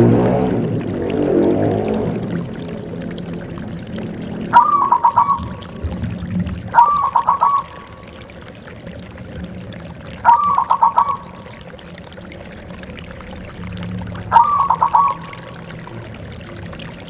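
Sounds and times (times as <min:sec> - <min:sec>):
low background rumble: 0:00.0 - 0:17.0
dove singing: 0:04.5 - 0:05.8, 0:06.7 - 0:08.0, 0:10.2 - 0:11.4, 0:14.3 - 0:15.6.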